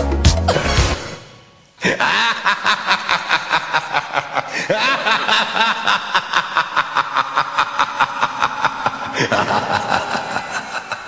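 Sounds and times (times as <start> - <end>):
rapid snickering laughter: 1.8 - 11.0.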